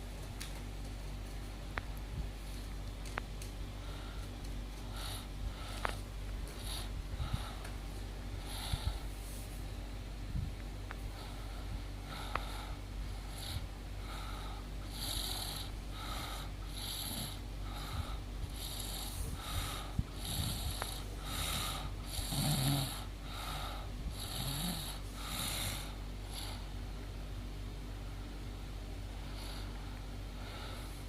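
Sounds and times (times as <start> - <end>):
woman snoring: 12.1 - 26.7.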